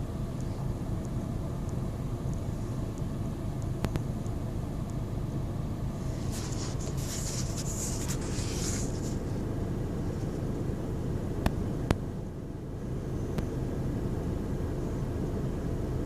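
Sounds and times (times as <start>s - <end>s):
diesel engine idling roughly: 0.0s - 16.0s
hissing rustle: 5.9s - 10.5s.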